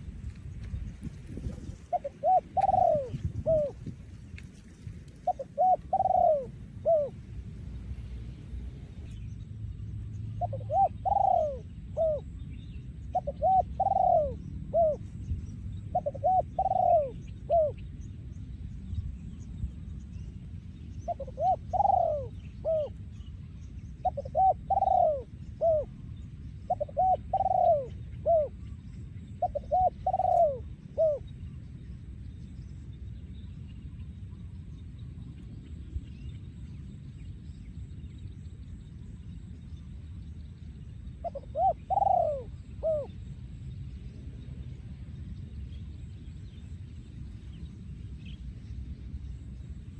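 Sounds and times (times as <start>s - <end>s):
dove cooing: 0.7s - 4.1s, 4.8s - 9.1s, 10.4s - 12.4s, 13.1s - 15.1s, 15.9s - 17.8s, 21.1s - 23.0s, 24.0s - 26.0s, 26.7s - 28.7s, 29.4s - 31.4s, 41.2s - 43.3s.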